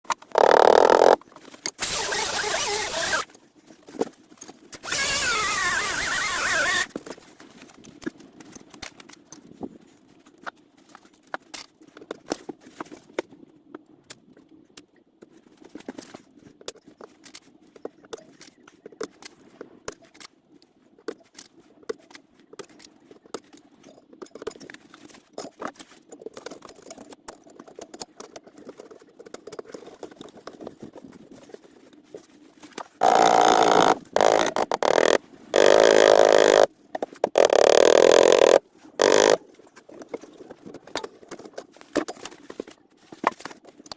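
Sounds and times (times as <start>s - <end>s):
power tool bursts: 0.2s - 1.2s, 1.8s - 3.3s, 4.8s - 6.9s, 33.0s - 36.7s, 37.3s - 39.4s.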